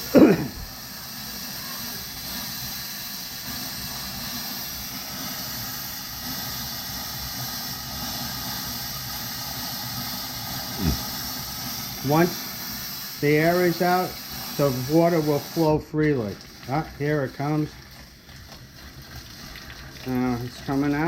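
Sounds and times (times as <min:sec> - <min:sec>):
water tap hissing: 0:00.0 - 0:21.0.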